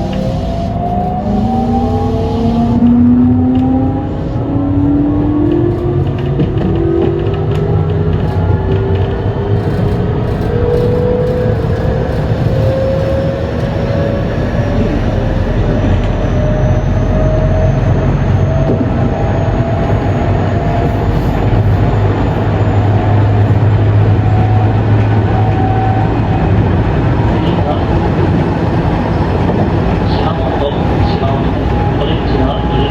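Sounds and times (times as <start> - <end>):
inverter and motor whine rising: 0.0 - 5.2
wheels rumbling on rail: 0.0 - 32.9.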